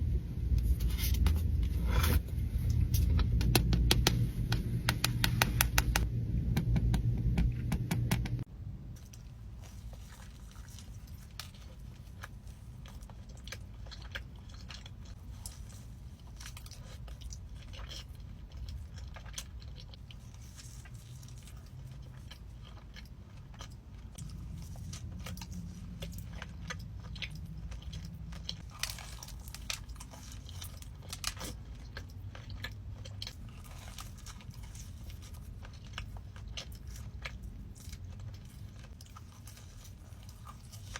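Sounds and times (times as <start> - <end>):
steady loud sound: 0.0 - 8.5
chewing crunchy food: 8.9 - 40.9.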